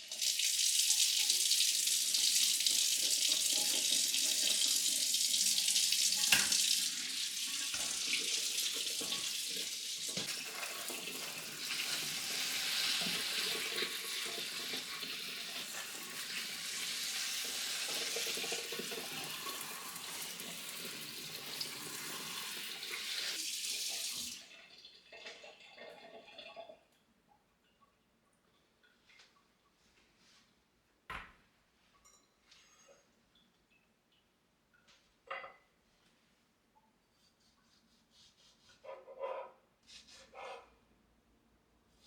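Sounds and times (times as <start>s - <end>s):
tap water running into sink: 0.0s - 26.6s.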